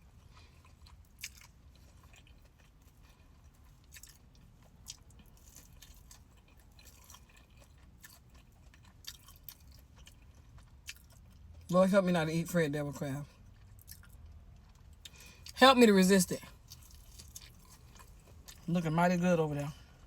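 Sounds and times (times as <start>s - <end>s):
chewing crunchy food: 0.0s - 11.7s, 13.2s - 15.6s, 16.4s - 18.8s
low steady hum: 0.0s - 20.0s.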